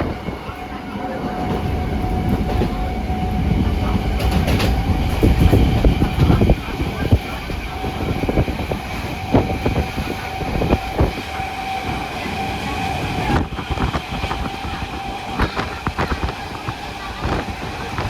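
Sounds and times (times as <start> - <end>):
wheels clacking over rail joints: 0.0 - 11.1
train rumbling on track: 0.0 - 18.0.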